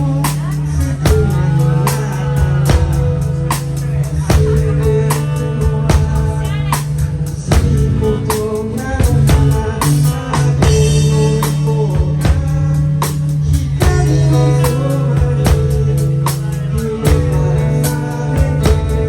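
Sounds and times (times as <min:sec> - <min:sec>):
drum kit beat: 0:00.0 - 0:19.0
live band playing: 0:00.0 - 0:19.0.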